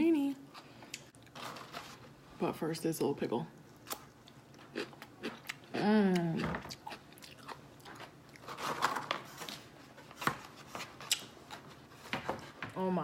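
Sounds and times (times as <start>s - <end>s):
person chewing crunchy pickle: 3.7s - 8.6s.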